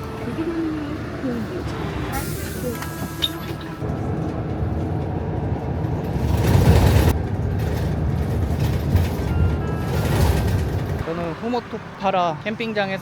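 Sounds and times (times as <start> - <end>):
bus engine rumbling: 0.0 - 13.0.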